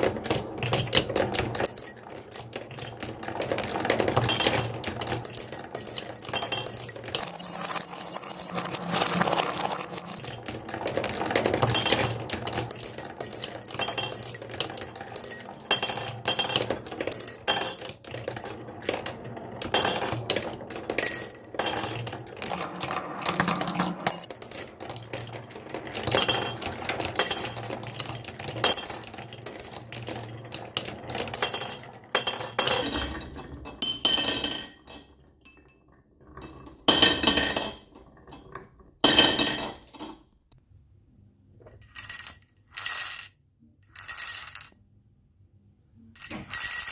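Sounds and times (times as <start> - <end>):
marbles clattering down a marble run: 0.0 - 33.6, 43.9 - 44.7, 46.2 - 46.9.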